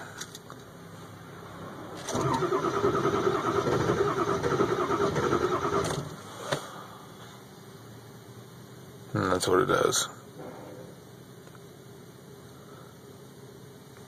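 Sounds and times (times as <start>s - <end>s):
diesel engine cranking: 1.8s - 6.6s.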